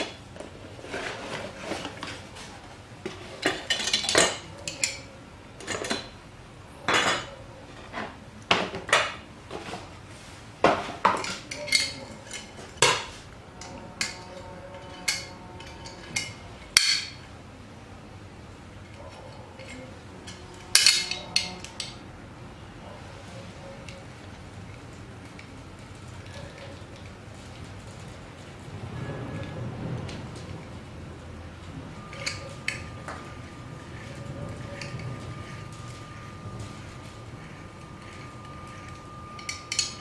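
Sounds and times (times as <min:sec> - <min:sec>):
metal kitchen tools clinking: 0:03.4 - 0:06.2, 0:10.8 - 0:17.3, 0:18.9 - 0:22.0, 0:32.0 - 0:40.0.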